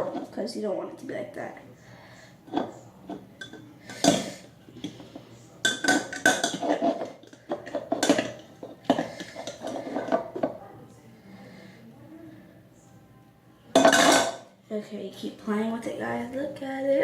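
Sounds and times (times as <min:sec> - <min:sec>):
fork scraping against bowl: 0:05.8 - 0:10.5.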